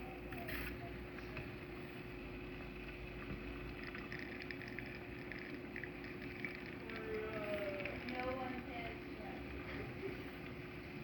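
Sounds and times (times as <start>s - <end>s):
espresso machine humming: 0.0s - 11.0s.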